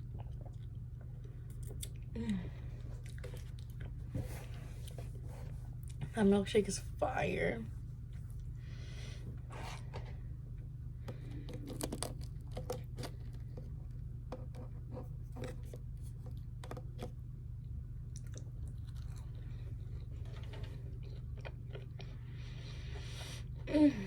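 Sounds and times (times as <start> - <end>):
person chewing crunchy food: 0.0 - 5.2, 11.1 - 13.9, 18.0 - 23.6
low hum: 0.0 - 24.0.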